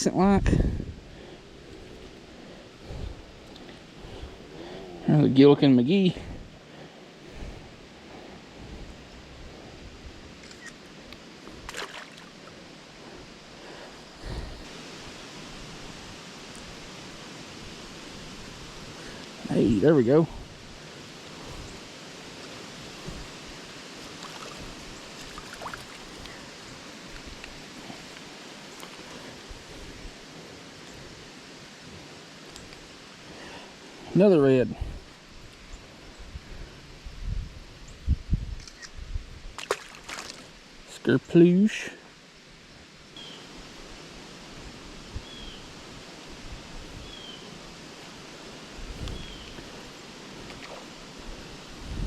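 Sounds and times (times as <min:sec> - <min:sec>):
creek water running: 0:00.0 - 0:36.9, 0:39.5 - 0:52.0
small bird chirping: 0:49.0 - 0:49.8.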